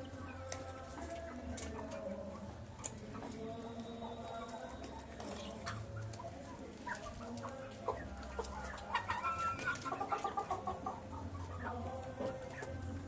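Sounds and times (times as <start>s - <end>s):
chicks clucking and cheeping: 0.0s - 13.0s.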